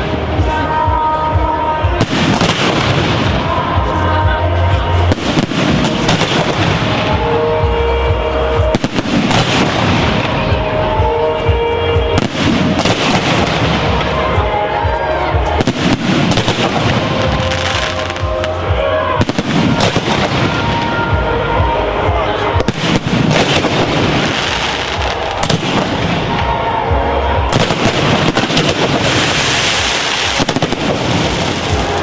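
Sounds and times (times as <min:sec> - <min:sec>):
loud music with bass line: 0:00.0 - 0:32.0
fireworks bangs: 0:01.8 - 0:04.0, 0:04.8 - 0:32.0.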